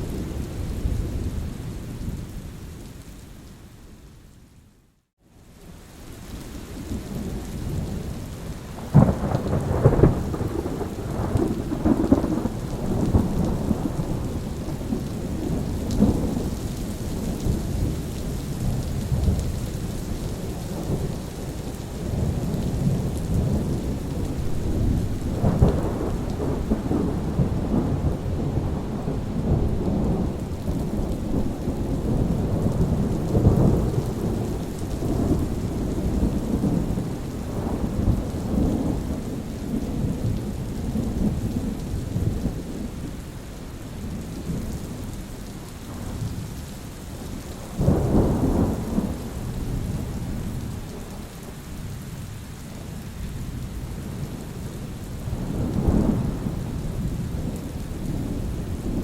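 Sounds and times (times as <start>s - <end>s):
steady rain: 0.0s - 59.0s
rolling thunder: 8.8s - 21.2s, 22.0s - 43.2s, 47.7s - 51.3s, 55.2s - 59.0s.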